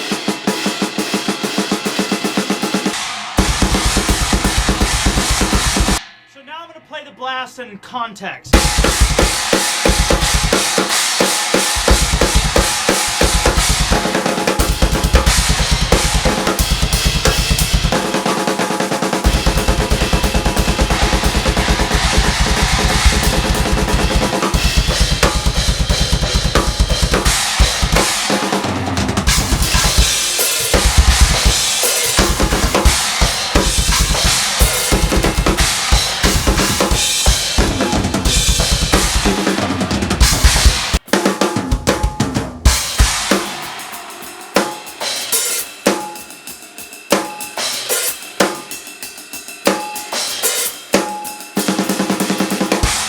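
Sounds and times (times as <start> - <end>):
snare and cymbal hits: 0.0 - 6.8, 8.5 - 53.0
fast drum blast beat: 0.0 - 6.9, 8.5 - 53.0
fast bass drum: 2.0 - 6.0, 8.5 - 43.8, 52.4 - 53.0.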